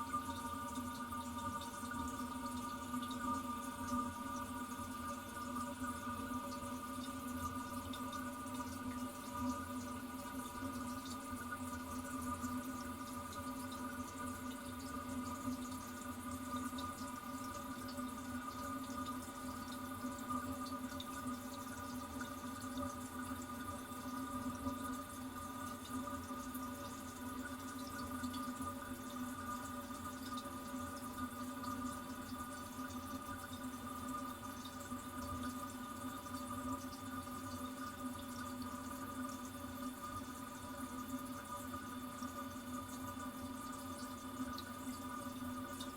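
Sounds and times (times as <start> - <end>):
water drips: 0.0 - 25.0
toilet cistern refilling: 0.0 - 45.9.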